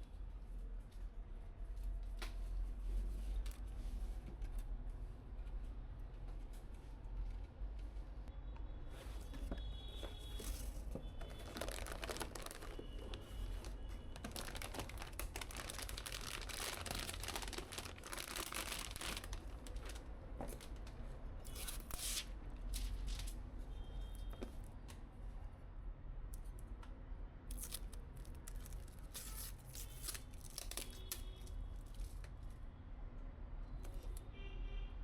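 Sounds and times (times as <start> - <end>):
packaging crinkling and tearing: 10.4 - 20.7, 27.5 - 32.2.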